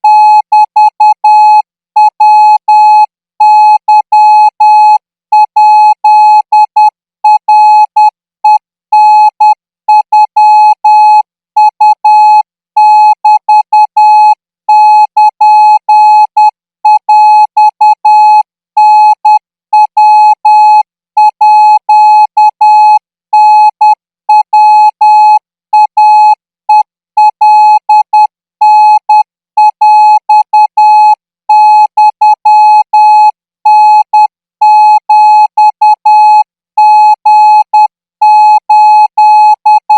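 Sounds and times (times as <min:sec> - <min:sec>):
morse code beeps: 0:27.5 - 0:31.0, 0:33.7 - 0:38.5.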